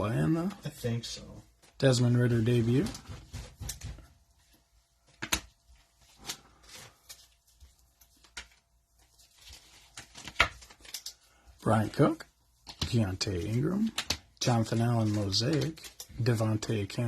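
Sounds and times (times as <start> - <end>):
cards clicking and rustling: 5.0 - 17.0.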